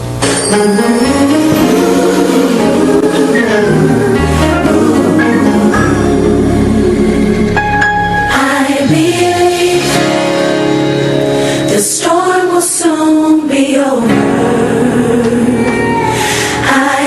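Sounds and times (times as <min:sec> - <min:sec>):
gospel singing with instrumental backing: 0:00.2 - 0:17.0.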